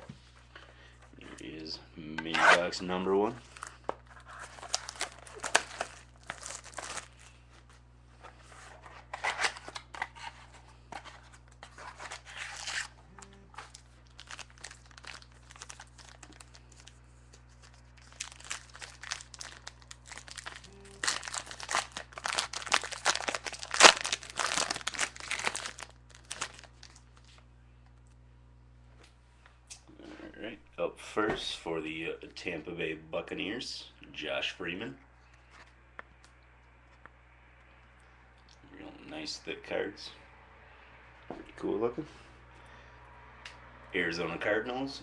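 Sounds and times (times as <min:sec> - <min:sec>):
wrapping tearing and crinkling: 0:03.4 - 0:07.4, 0:09.1 - 0:27.4.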